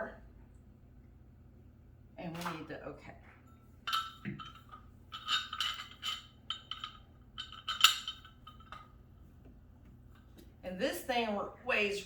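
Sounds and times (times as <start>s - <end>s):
metal hardware clinking: 3.8s - 9.0s.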